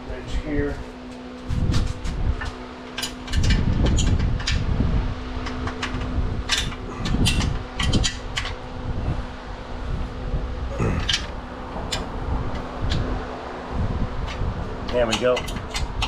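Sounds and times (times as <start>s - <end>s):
steady hum: 0.0s - 16.0s
wrench clicking against bolt: 5.4s - 8.6s, 14.3s - 16.0s.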